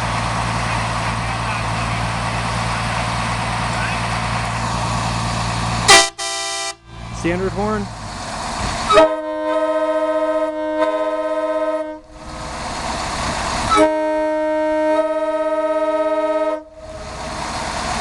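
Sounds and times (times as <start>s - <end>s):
bus air horn blasts: 5.9s - 7.1s, 8.9s - 12.1s, 13.7s - 16.8s.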